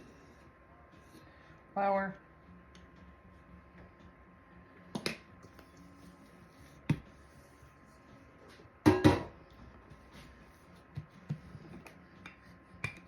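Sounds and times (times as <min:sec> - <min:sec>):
kitchen tools knocking on worktop: 0:08.9 - 0:09.4.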